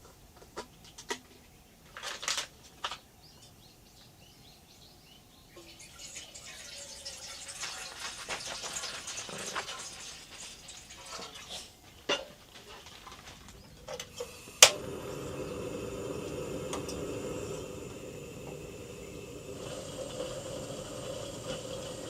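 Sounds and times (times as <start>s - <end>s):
handling and clattering: 0.0s - 3.0s, 7.5s - 14.3s
steady machine hum: 13.7s - 22.0s.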